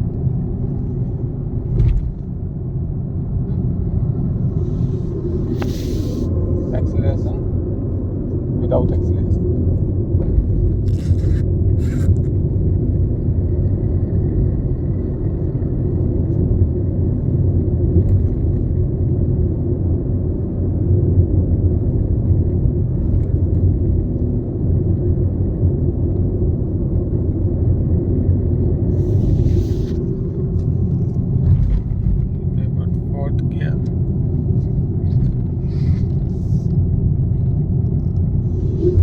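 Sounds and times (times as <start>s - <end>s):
tyre and road noise rumble: 0.0s - 39.0s.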